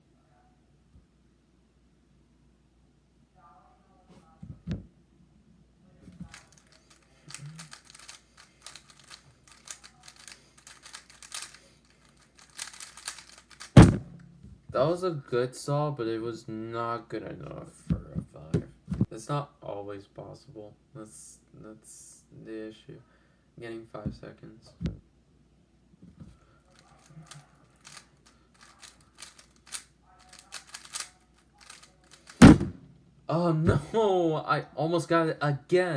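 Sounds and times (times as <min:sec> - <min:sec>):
plastic puzzle cube clicking: 0:06.2 - 0:13.8, 0:26.8 - 0:32.4.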